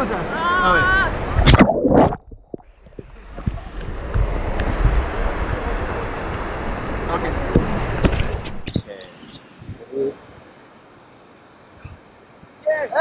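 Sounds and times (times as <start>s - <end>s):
wind rumble on microphone: 0.8s - 8.9s, 9.6s - 9.9s.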